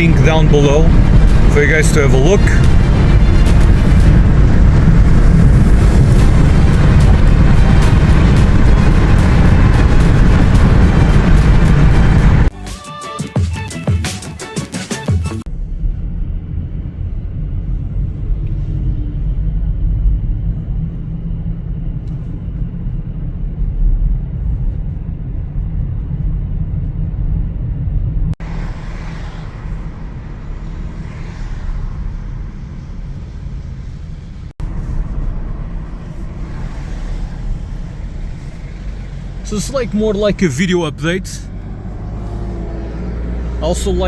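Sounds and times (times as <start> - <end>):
car engine and road noise: 0.0 - 12.6, 14.9 - 44.0.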